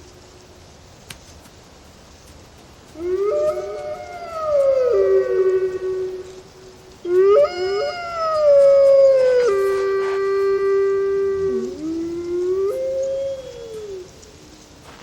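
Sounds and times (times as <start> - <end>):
wolves howling: 3.0 - 14.6.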